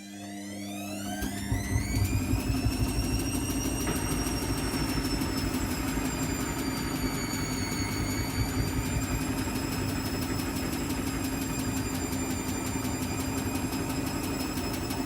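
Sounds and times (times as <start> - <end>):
washing machine motor whine: 0.0 - 15.0
rapid even ticking: 1.2 - 12.6
spinning drum rumble: 1.2 - 15.0.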